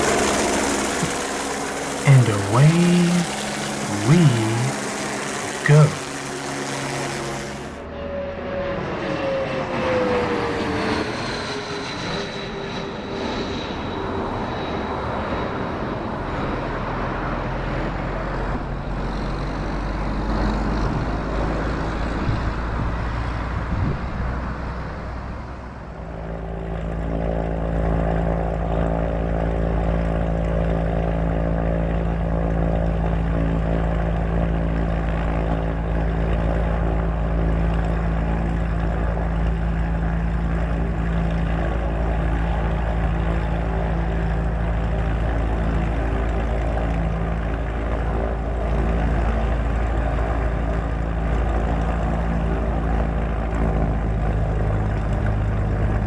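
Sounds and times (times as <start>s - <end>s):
jet engines whining: 0.0s - 11.0s
steady engine drone: 0.0s - 56.0s.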